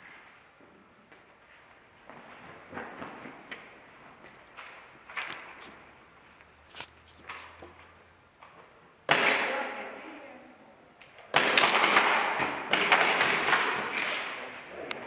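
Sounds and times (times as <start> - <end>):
sharp echoing bangs: 9.0 - 9.8, 11.3 - 14.6.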